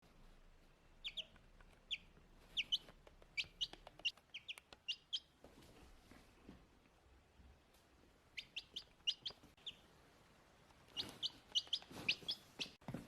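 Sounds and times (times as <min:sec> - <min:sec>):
chick peeping: 0:01.0 - 0:05.4, 0:08.3 - 0:09.9, 0:10.8 - 0:12.8.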